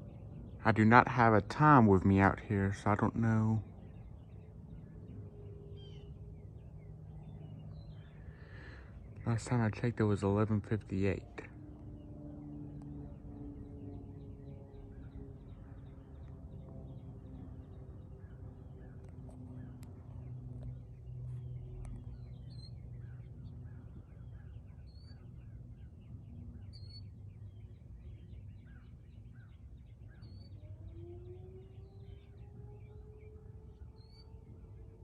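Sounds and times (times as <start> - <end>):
low outdoor rumble: 0.0 - 35.0
small birds chirping: 0.0 - 35.0
warning siren winding up: 30.3 - 35.0.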